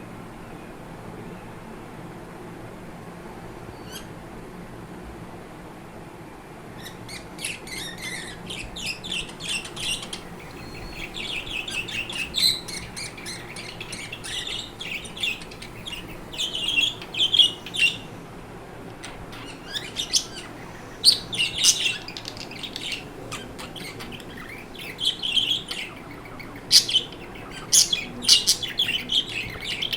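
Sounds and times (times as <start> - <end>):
budgerigars chirping and warbling: 6.8 - 18.2, 18.9 - 29.9.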